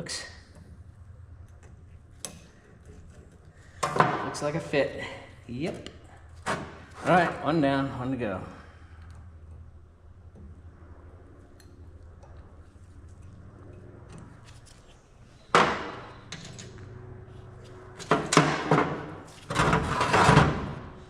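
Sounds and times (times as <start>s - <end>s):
low steady hum: 0.0s - 21.0s.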